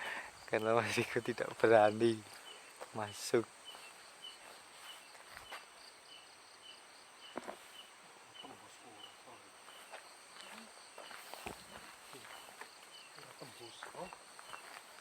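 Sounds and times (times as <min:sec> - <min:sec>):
cricket chirping: 0:00.0 - 0:15.0.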